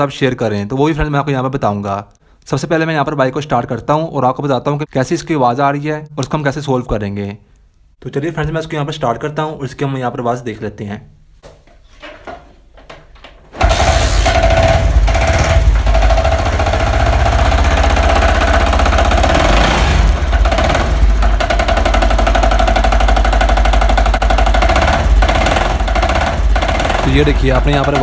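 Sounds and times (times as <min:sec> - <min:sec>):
motorcycle engine clattering: 0:12.2 - 0:28.0.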